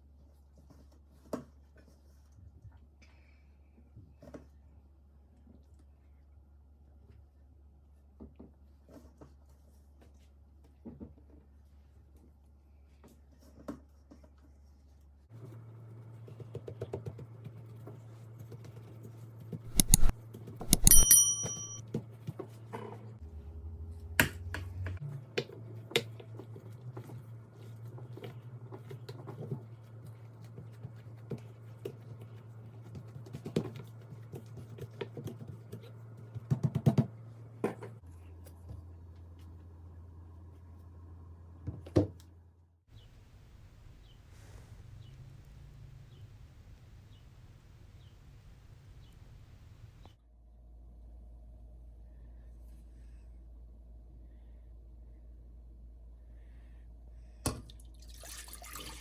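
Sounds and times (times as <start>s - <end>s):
ringing metallic clink: 19.7s - 21.8s
utensils and dishes clicking: 19.7s - 21.8s.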